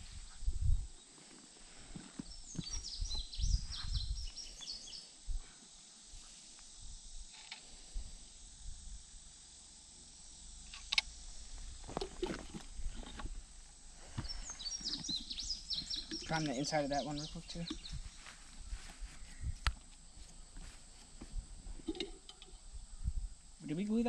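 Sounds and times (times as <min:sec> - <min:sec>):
bird chirping: 0:02.2 - 0:05.1, 0:14.1 - 0:18.4
sharp click: 0:10.7 - 0:11.1.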